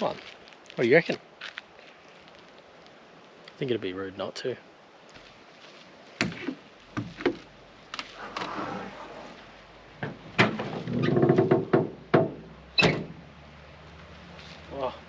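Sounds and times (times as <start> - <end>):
sliding scraping sound: 8.0 - 9.6
doors thunking: 10.0 - 13.2.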